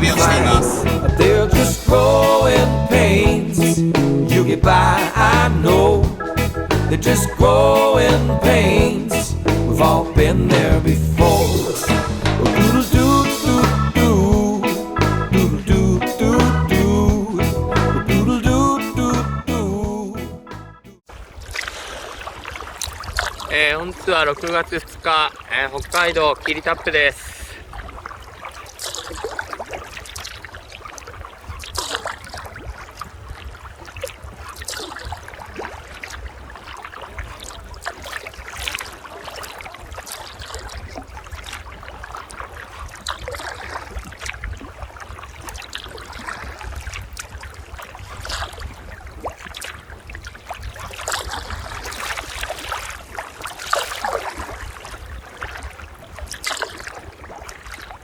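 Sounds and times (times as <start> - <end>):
low rumble: 0.0 - 6.4, 7.0 - 14.4
paddle splashing into water: 21.1 - 24.7, 27.7 - 58.0
water trickling and gurgling: 21.1 - 58.0.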